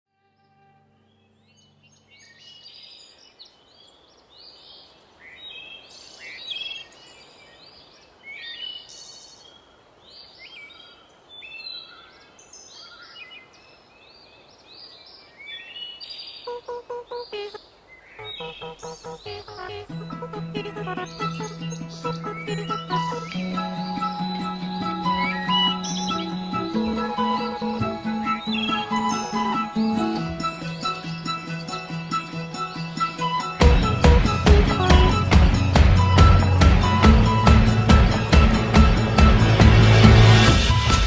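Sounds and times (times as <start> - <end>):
songbirds chirping and trilling: 0.3 - 39.1
music with pulsing repeating tone: 18.2 - 41.0.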